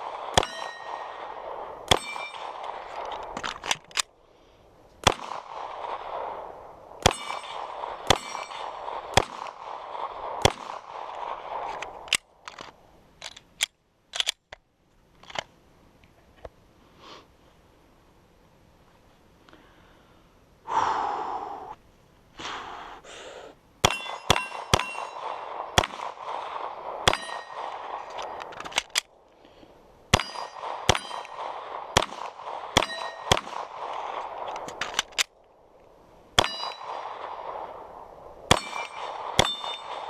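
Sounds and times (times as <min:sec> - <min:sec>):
pistol shots: 0:00.0 - 0:03.1, 0:05.0 - 0:06.4, 0:07.0 - 0:11.8, 0:23.8 - 0:29.0, 0:30.1 - 0:35.2, 0:36.4 - 0:37.7, 0:38.5 - 0:40.0
steel target plate clanging: 0:00.4 - 0:01.1, 0:01.9 - 0:02.6, 0:07.1 - 0:08.6, 0:23.9 - 0:25.2, 0:27.1 - 0:27.6, 0:30.2 - 0:31.4, 0:32.8 - 0:33.3, 0:36.4 - 0:37.0, 0:38.5 - 0:40.0.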